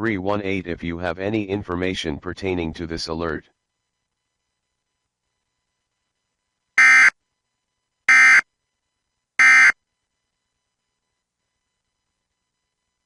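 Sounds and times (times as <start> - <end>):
short buzzing data bursts: 6.8 - 7.2, 8.1 - 8.4, 9.4 - 9.8.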